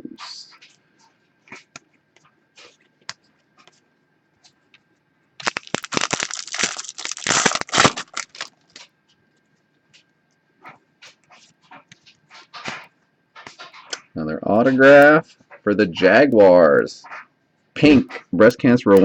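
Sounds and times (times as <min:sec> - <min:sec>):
foil wrapper tearing and crinkling: 0:05.4 - 0:08.9.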